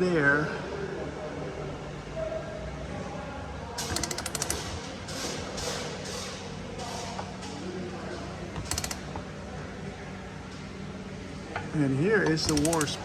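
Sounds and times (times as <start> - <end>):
socket ratchet clicking: 3.8 - 4.7, 8.6 - 9.1, 12.4 - 13.0.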